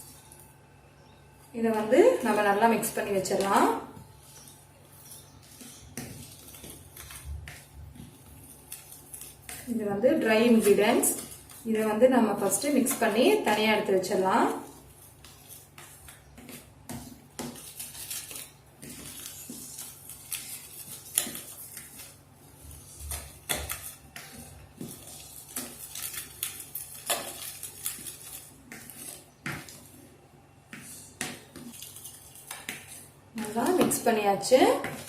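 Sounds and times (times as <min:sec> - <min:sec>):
utensil stirring in bowl: 0:01.5 - 0:35.0.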